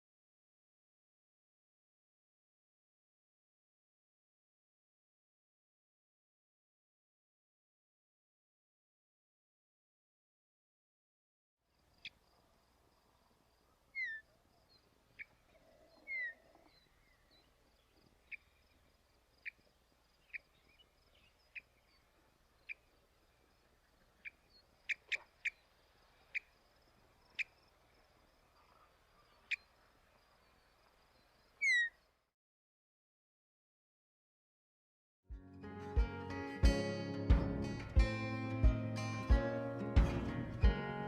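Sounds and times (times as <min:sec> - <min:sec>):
faint steady hiss: 0:11.7 - 0:32.3
downslurred bird whistles: 0:31.6 - 0:32.0.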